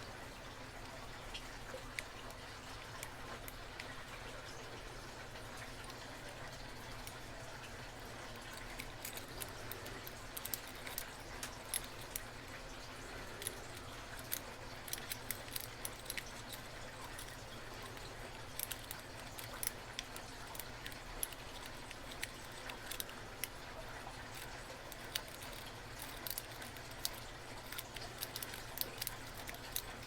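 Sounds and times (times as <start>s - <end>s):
lock pick clicking and scraping: 8.2s - 30.0s.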